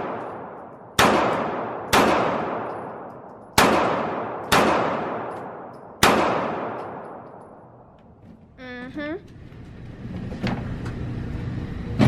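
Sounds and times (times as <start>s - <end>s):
gunshots with echo: 0.0s - 7.8s.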